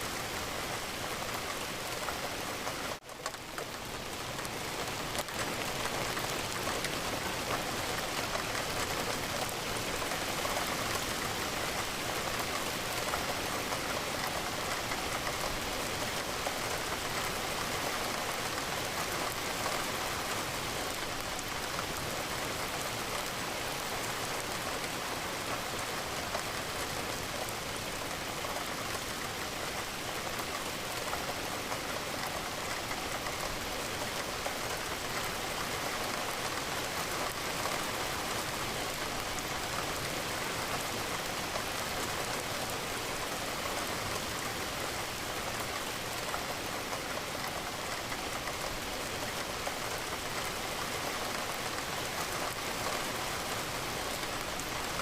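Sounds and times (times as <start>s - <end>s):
rain pattering on a window: 0.0s - 55.0s.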